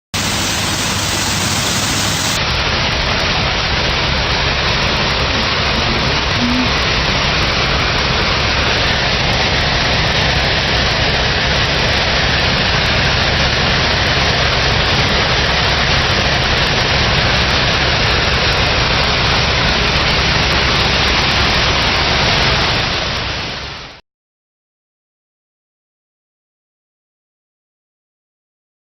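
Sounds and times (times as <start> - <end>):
heavy machinery running: 0.1 - 23.4.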